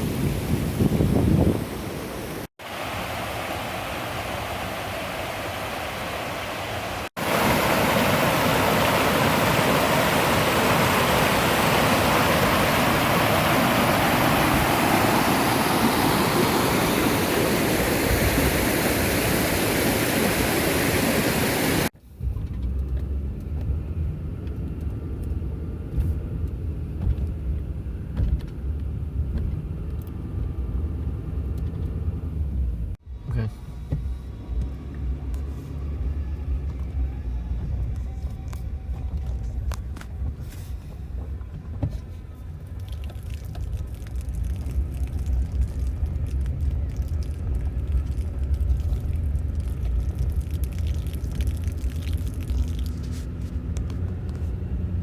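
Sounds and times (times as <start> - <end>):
rushing water: 0.0 - 21.9, 42.6 - 54.5
car driving rumble: 21.9 - 55.0.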